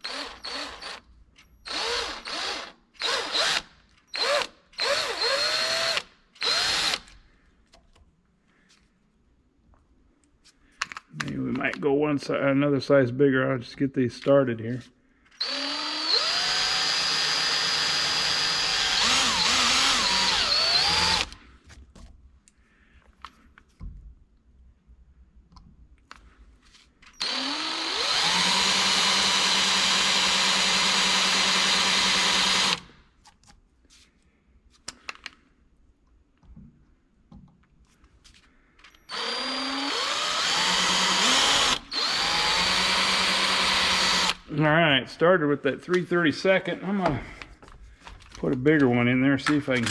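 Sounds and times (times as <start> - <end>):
electric drill drilling into metal: 0.0 - 1.0, 1.6 - 7.1, 15.4 - 21.4, 27.1 - 32.9, 38.9 - 44.4.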